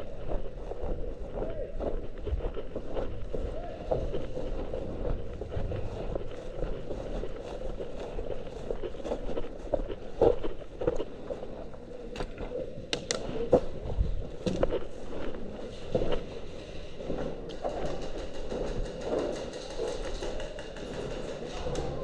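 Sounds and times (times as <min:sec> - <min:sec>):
footsteps: 0:00.0 - 0:22.0
sharp clicks: 0:12.9 - 0:13.3.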